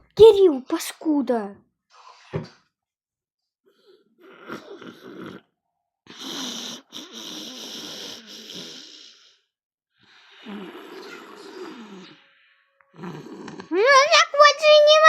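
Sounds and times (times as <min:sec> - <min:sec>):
man snoring: 0:04.2 - 0:05.5, 0:06.1 - 0:09.5, 0:10.1 - 0:12.2, 0:12.9 - 0:13.7.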